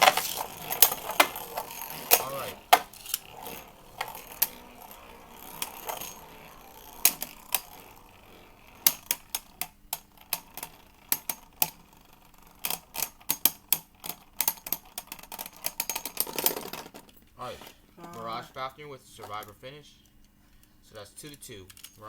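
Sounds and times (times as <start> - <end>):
spinning tops clashing: 0.0 - 13.6.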